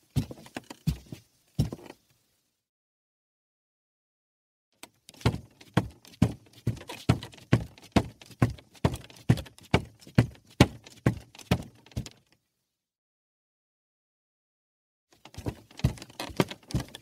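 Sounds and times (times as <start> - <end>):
footsteps on wooden stairs: 0.0 - 2.0, 5.1 - 12.2, 15.2 - 17.0.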